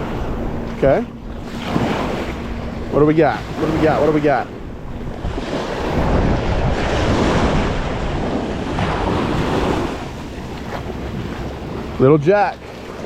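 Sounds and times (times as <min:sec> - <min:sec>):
ocean waves washing onto beach: 0:00.0 - 0:13.0
wind buffeting microphone: 0:00.0 - 0:13.0.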